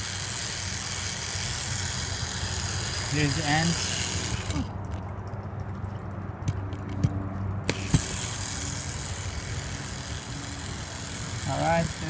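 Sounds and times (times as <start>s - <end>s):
toy train motor whirring: 0.0s - 4.7s, 7.7s - 12.0s
sharp clicks and knocks: 4.9s - 8.2s.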